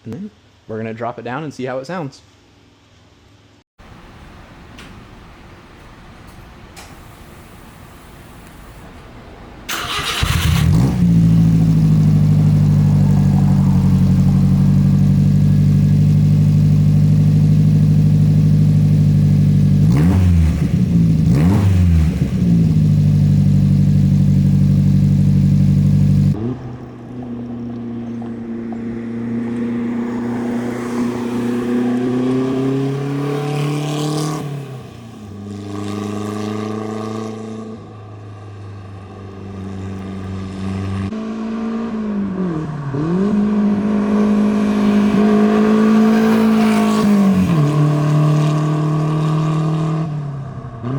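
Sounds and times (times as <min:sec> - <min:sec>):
engine accelerating: 0:09.7 - 0:37.7, 0:39.3 - 0:50.2
truck engine idling and revving: 0:09.7 - 0:50.9.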